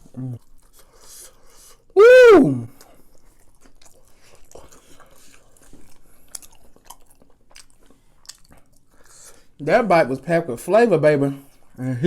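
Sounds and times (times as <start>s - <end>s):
chewing crunchy food: 0.0s - 2.0s, 2.7s - 10.2s.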